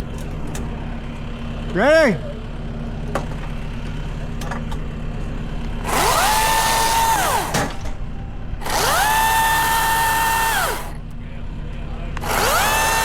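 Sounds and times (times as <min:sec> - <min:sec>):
steady low hum: 0:00.0 - 0:12.9
electric chainsaw motor revving: 0:05.8 - 0:07.6, 0:08.6 - 0:11.0, 0:12.2 - 0:13.0.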